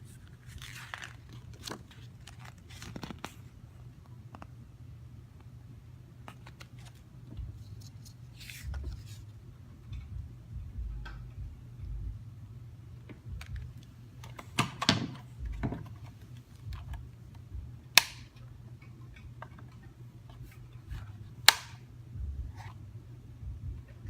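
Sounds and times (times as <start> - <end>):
faint low hum: 0.0 - 24.0
sharp loud clicks: 18.0 - 18.3.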